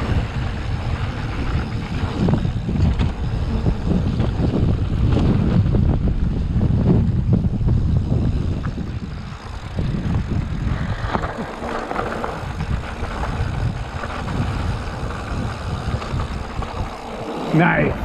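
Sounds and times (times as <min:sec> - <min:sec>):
bike rattling and knocking: 0:00.0 - 0:18.0
wind buffeting microphone: 0:00.0 - 0:18.0
tyres crunching over dirt: 0:08.3 - 0:18.0.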